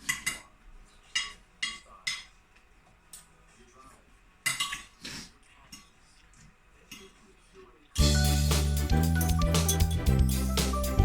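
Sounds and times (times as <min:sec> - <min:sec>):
dishes and cutlery clinking: 0:04.4 - 0:05.0.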